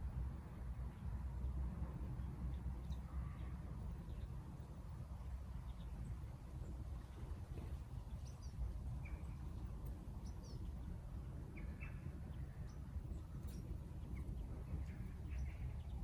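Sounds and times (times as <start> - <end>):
steady low rumble: 0.0 - 16.0
birds chirping: 8.0 - 16.0.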